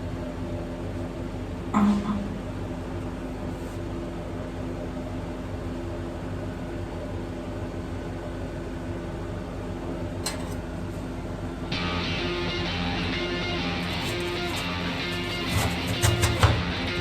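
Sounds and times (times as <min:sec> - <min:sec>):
low mechanical hum: 0:00.0 - 0:17.0
guitar music: 0:11.7 - 0:17.0.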